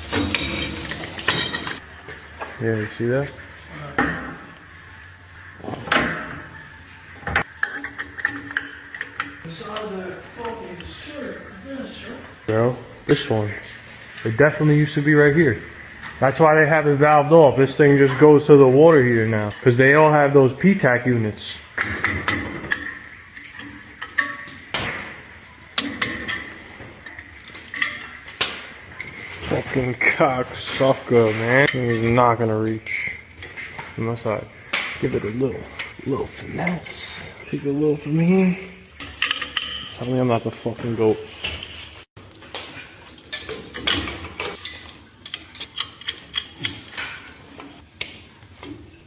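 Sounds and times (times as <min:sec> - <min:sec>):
metallic clanks of tools: 0:00.0 - 0:01.8, 0:07.3 - 0:09.5, 0:21.8 - 0:25.1, 0:25.7 - 0:29.8, 0:30.6 - 0:34.0, 0:38.8 - 0:40.2, 0:42.4 - 0:48.8.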